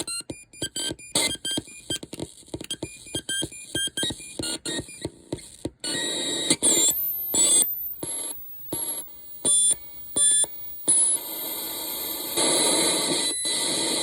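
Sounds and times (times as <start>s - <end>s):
choppy electronic beeping bursts: 0.0s - 2.0s, 2.6s - 14.0s
steady hiss with high tones: 6.6s - 13.2s.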